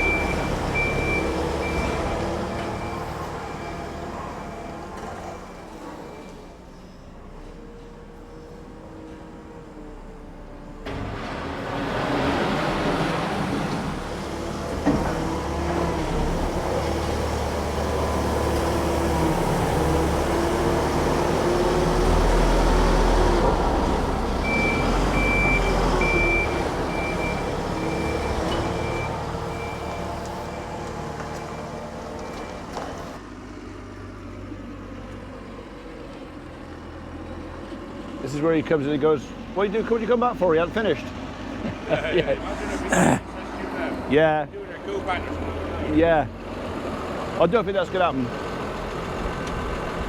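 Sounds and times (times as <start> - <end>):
reversing alarm beeping: 0.0 - 4.8, 24.4 - 32.8
farm diesel machinery running: 7.4 - 42.6, 44.6 - 50.0.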